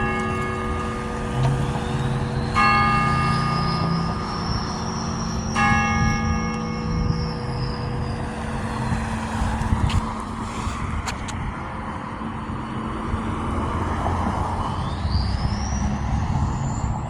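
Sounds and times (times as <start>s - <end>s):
rising whine: 0.0s - 11.3s
vehicle passing: 0.0s - 11.5s
road traffic rumble: 0.0s - 17.0s.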